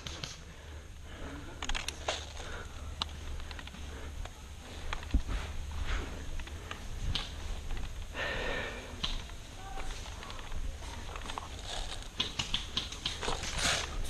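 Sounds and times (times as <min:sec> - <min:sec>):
gear clicking and rustling: 0:00.0 - 0:08.2, 0:09.0 - 0:14.0
footsteps: 0:01.1 - 0:08.4.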